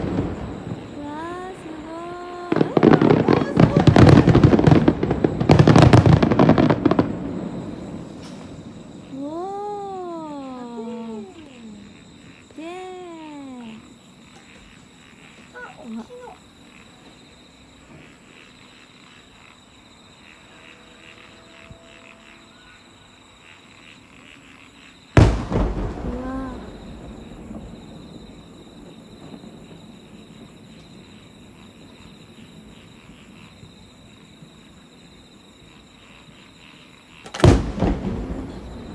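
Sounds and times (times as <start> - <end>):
firework shells bursting: 0.0 - 12.4, 25.2 - 31.6, 37.2 - 38.9
crickets chirping: 0.0 - 38.9.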